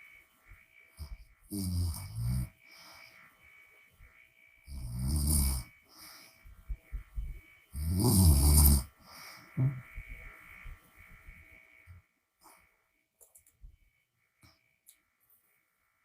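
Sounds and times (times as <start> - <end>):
woman snoring: 1.0 - 2.7, 4.7 - 5.7, 7.7 - 9.0.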